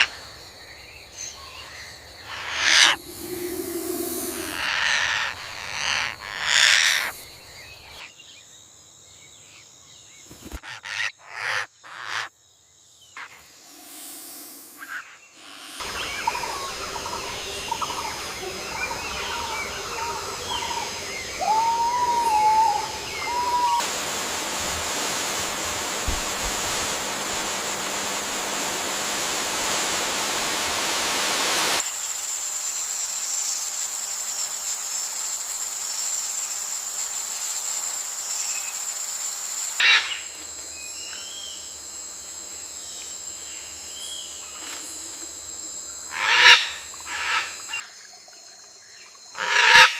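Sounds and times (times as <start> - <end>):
steady hiss: 0.0 - 8.1, 13.2 - 47.8
whistled bird call: 15.8 - 23.8.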